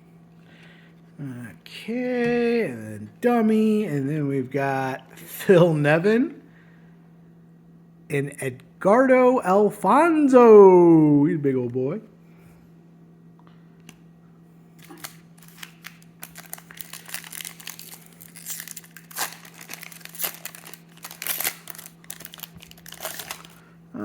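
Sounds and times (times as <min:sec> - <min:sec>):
foil pack crinkling and tearing: 0:14.8 - 0:23.7.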